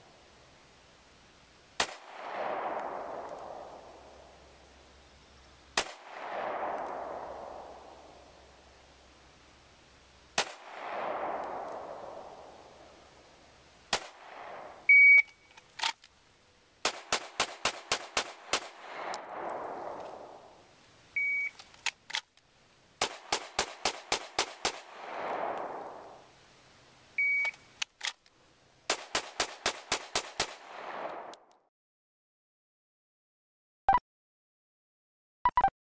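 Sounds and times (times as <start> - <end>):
pistol shots with echo: 16.8 - 19.8
electronic start beep: 35.5 - 35.7.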